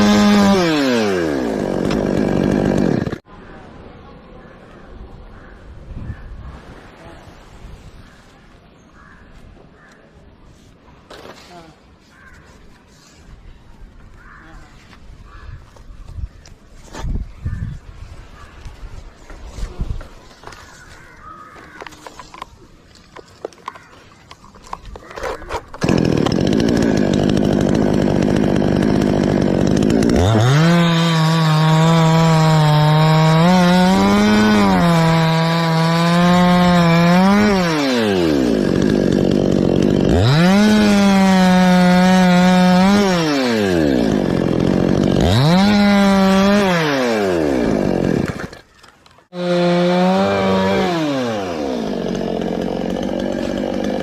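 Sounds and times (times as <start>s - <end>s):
chainsaw cutting wood: 0.0s - 3.2s, 24.8s - 54.0s.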